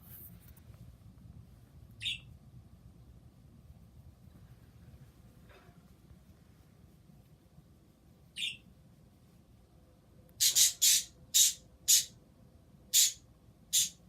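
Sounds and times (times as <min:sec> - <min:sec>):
pet bird calling: 0:02.0 - 0:02.3, 0:08.3 - 0:08.6, 0:10.4 - 0:12.2, 0:12.9 - 0:14.0.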